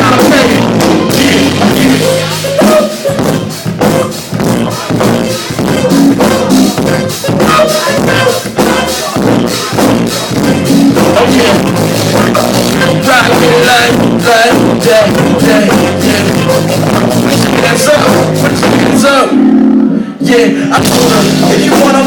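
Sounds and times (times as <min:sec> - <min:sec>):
drum kit beat: 0:00.0 - 0:22.0
instrumental funk band: 0:00.0 - 0:22.0.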